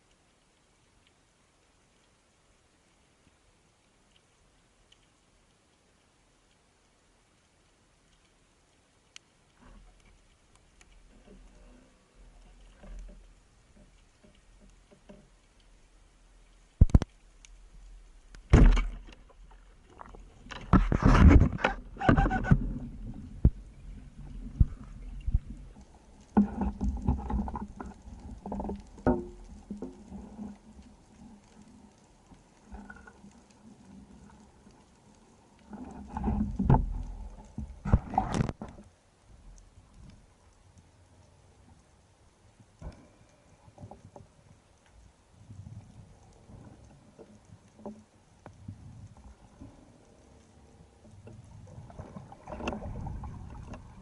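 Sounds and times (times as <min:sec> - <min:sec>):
sharp underwater knocks: 0:16.8 - 0:17.1, 0:18.4 - 0:19.3
underwater rushing bubbling noise: 0:51.5 - 0:54.0.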